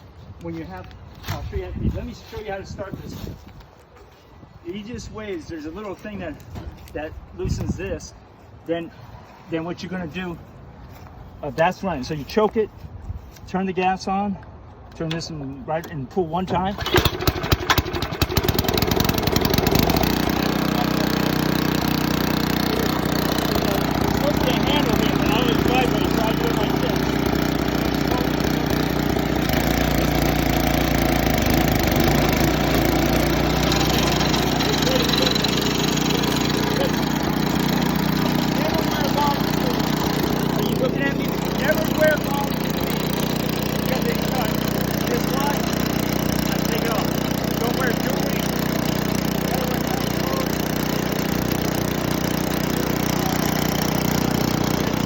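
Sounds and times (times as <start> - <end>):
wood chipper engine running: 16.5 - 55.0.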